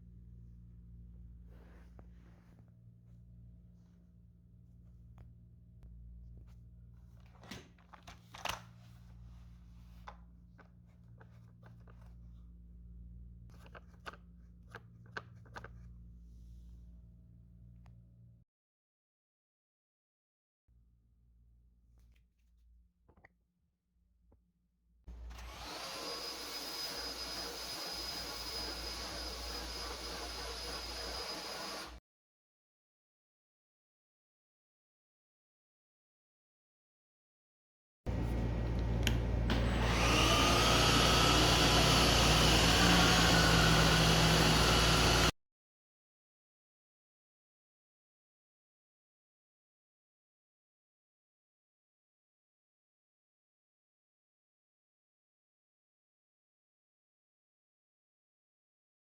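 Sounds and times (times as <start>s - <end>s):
low hum: 0.0s - 7.5s, 38.1s - 40.3s
stick vacuum cleaner running: 25.1s - 32.0s, 38.1s - 45.3s.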